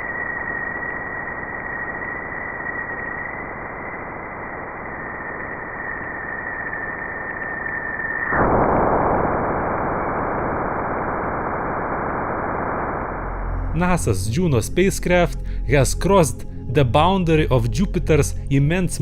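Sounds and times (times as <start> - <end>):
thin whistling tone: 0.0 - 8.3.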